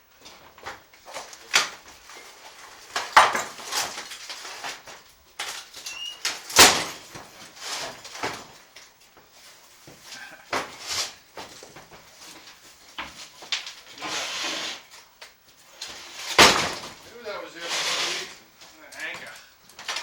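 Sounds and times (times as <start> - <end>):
short squeak: 5.9 - 6.3.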